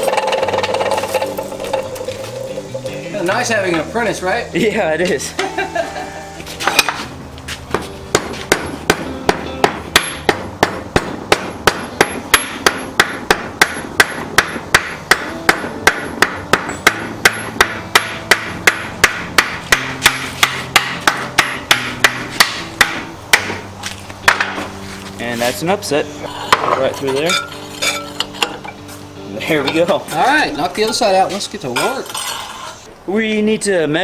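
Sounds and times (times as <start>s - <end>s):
hammer striking hot steel: 7.7s - 24.7s.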